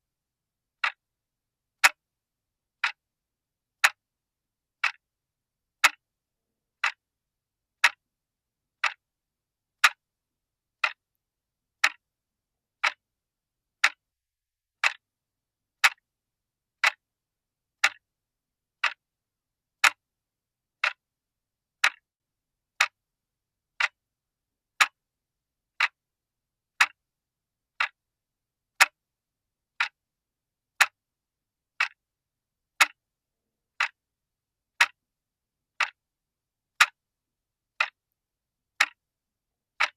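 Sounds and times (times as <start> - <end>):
clock ticking: 0.8 - 1.0, 1.8 - 2.0, 2.8 - 3.0, 3.8 - 4.0, 4.8 - 5.0, 5.8 - 6.0, 6.8 - 7.0, 7.8 - 8.0, 8.8 - 9.0, 9.8 - 10.0, 10.8 - 11.1, 11.8 - 12.1, 12.8 - 13.0, 13.8 - 14.0, 14.8 - 15.0, 15.8 - 16.0, 16.8 - 17.0, 17.8 - 18.0, 18.8 - 19.0, 19.8 - 20.0, 20.8 - 21.0, 21.8 - 22.1, 22.8 - 23.0, 23.8 - 24.0, 24.8 - 25.0, 25.8 - 26.0, 26.8 - 27.0, 27.8 - 28.0, 28.8 - 29.0, 29.8 - 30.0, 30.8 - 31.0, 31.8 - 32.0, 32.8 - 33.0, 33.8 - 34.0, 34.8 - 35.0, 35.8 - 36.0, 36.8 - 37.0, 37.8 - 38.0, 38.8 - 39.0.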